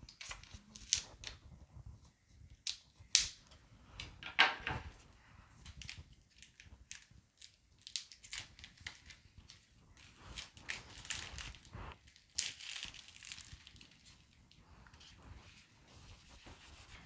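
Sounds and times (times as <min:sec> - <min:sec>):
plastic wrapping crinkling and tearing: 0:00.1 - 0:01.4, 0:05.6 - 0:14.3.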